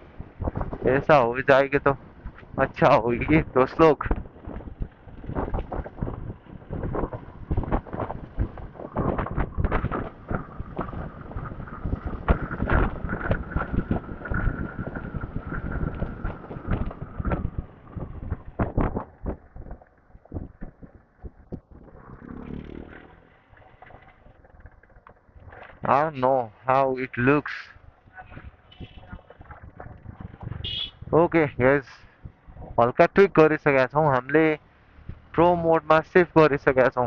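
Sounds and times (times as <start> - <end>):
motorcycle engine and road rumble: 0.0 - 37.0
wind buffeting a microphone: 0.0 - 37.0.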